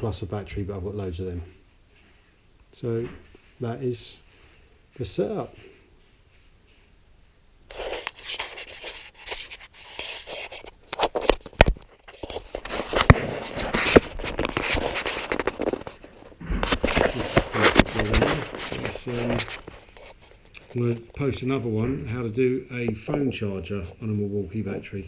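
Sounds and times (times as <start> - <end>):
objects scraped and rubbed: 7.7 - 22.3.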